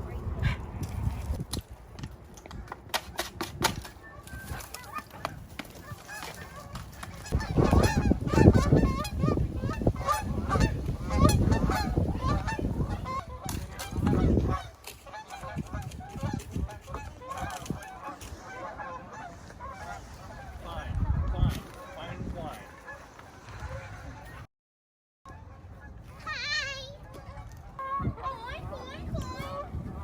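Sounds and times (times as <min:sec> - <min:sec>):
geese honking: 0:04.0 - 0:24.5, 0:27.0 - 0:28.6.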